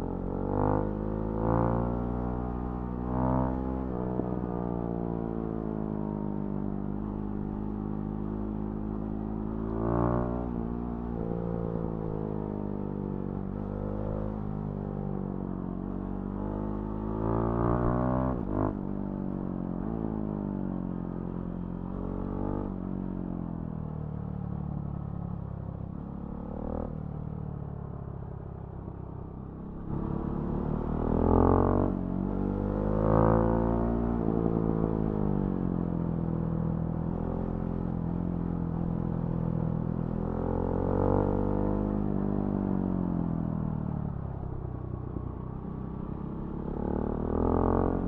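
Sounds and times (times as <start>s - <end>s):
motorcycle engine revving: 46.1s - 48.0s.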